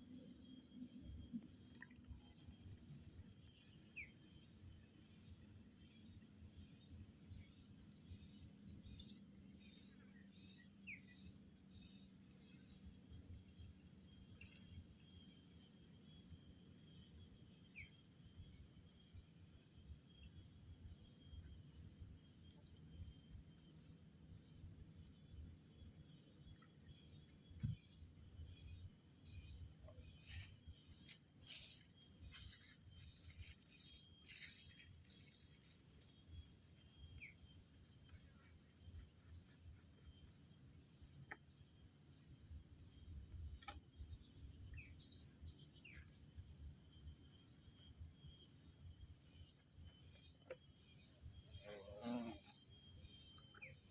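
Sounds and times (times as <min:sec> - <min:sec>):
high-pitched insect drone: 0:51.1 - 0:53.9.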